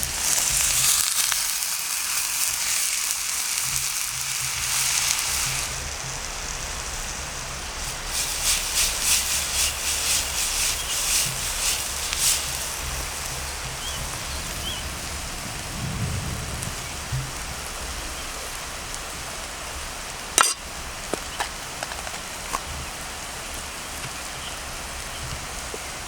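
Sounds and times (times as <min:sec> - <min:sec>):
sharp fire crack: 0:00.0 - 0:18.0
food sizzling over a campfire: 0:00.0 - 0:26.0.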